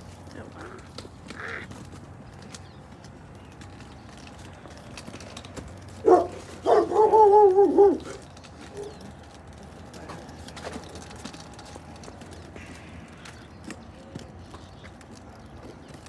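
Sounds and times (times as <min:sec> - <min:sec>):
dog barking: 0:06.0 - 0:09.0.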